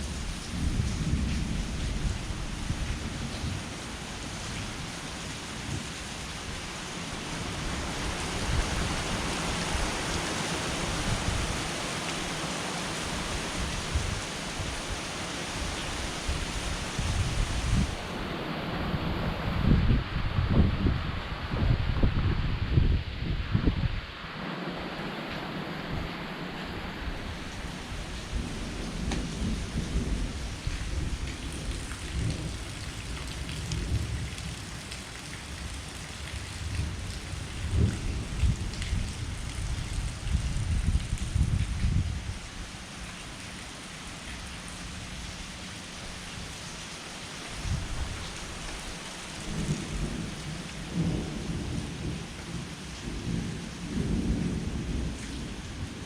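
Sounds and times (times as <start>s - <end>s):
low rolling thunder: 0.0s - 4.9s, 13.0s - 42.5s, 49.4s - 56.0s
heavy rain falling: 0.0s - 56.0s
thunder rolling: 25.8s - 34.4s.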